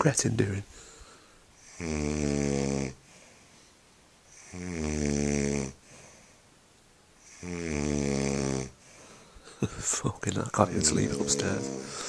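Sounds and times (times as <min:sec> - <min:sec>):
man snoring loudly: 0:01.6 - 0:03.0, 0:04.4 - 0:05.8, 0:07.2 - 0:08.8, 0:10.7 - 0:12.0.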